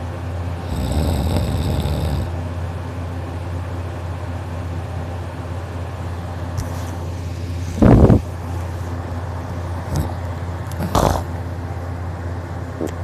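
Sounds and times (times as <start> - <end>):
man snoring: 0.6 - 2.4, 9.9 - 10.2, 10.8 - 11.3.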